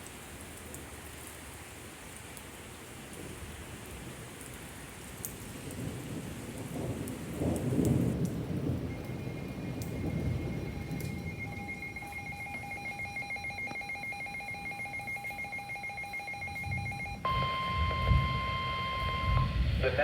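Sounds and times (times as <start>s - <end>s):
steady rain falling: 0.0s - 20.0s
thunder rumbling: 5.4s - 20.0s.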